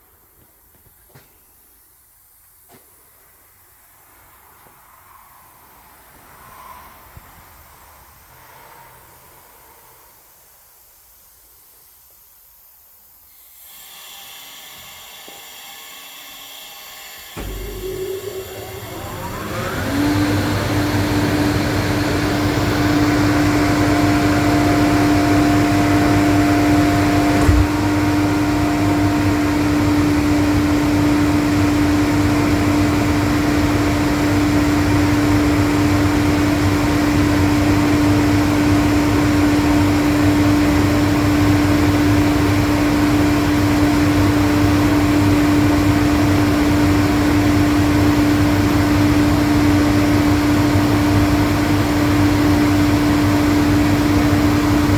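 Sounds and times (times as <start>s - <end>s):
air compressor humming: 13.3s - 54.9s
steady tone: 14.2s - 28.0s.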